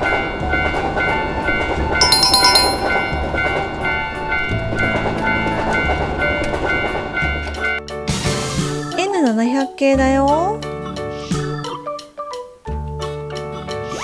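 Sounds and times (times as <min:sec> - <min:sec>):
sparkling chime: 0:02.0 - 0:03.6
background music: 0:02.0 - 0:03.7
ringing two-note tone: 0:02.0 - 0:03.7.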